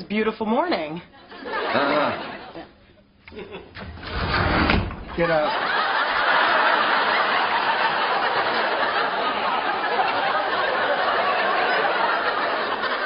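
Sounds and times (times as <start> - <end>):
studio audience laughing: 1.2 - 3.8, 5.2 - 13.0.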